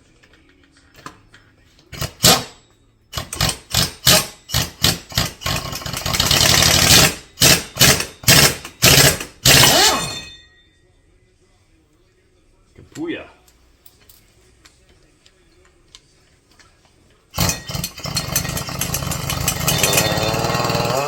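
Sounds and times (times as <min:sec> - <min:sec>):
impact wrench hammering: 0:01.9 - 0:10.4, 0:17.4 - 0:21.0.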